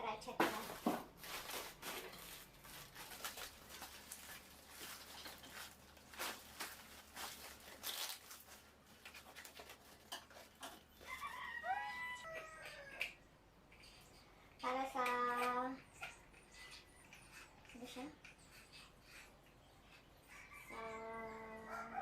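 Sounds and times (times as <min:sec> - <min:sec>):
packaging rustling and clicking: 0:00.5 - 0:10.6.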